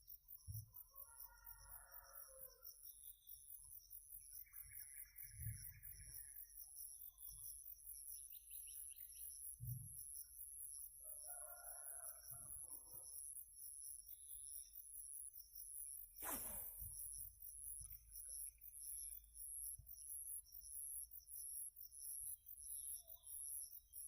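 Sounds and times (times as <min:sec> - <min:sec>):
high-pitched insect trill: 0:00.0 - 0:24.0.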